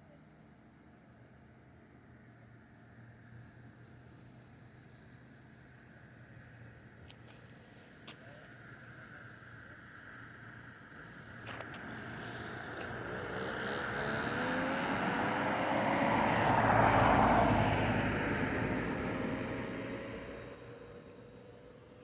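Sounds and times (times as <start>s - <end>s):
vehicle driving past: 12.0s - 21.0s.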